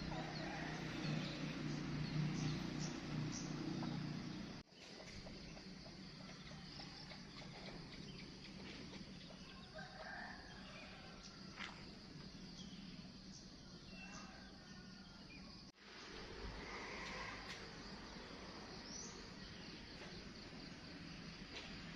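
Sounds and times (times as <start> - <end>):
faint chicken calls: 4.8 - 11.8, 13.8 - 15.5.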